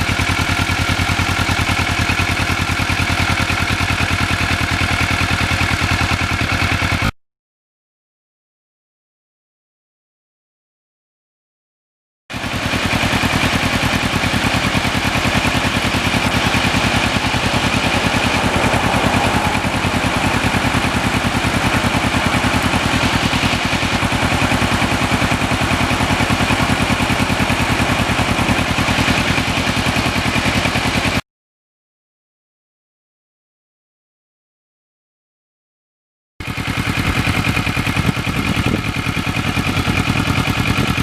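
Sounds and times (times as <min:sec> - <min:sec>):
motorcycle engine running steadily: 0:00.0 - 0:07.2, 0:12.3 - 0:31.2, 0:36.4 - 0:41.0.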